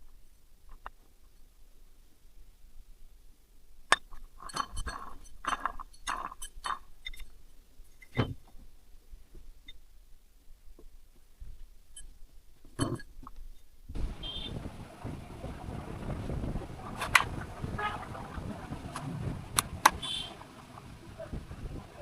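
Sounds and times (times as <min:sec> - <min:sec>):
metal tools clinking and tapping: 0:03.9 - 0:08.5, 0:11.9 - 0:13.7.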